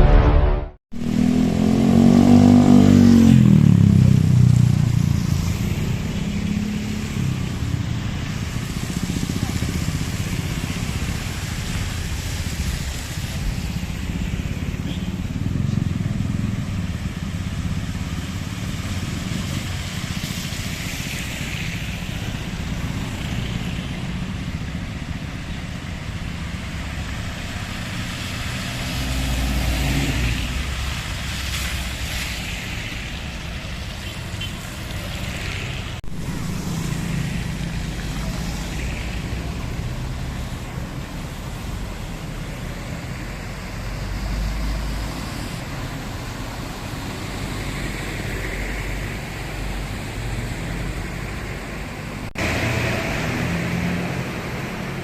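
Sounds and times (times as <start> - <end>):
car and motorcycle engines: 0.0 - 55.0
tyres hissing through water: 4.9 - 55.0.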